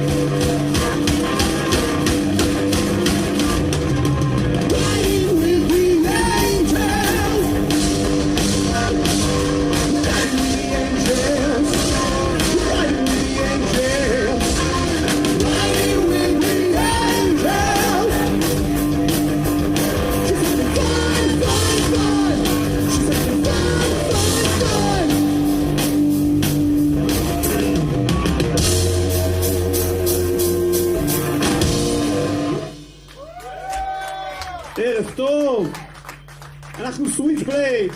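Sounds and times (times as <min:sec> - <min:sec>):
rock band playing: 0:00.0 - 0:37.9
person singing: 0:04.7 - 0:07.6, 0:10.0 - 0:18.5, 0:20.1 - 0:25.5.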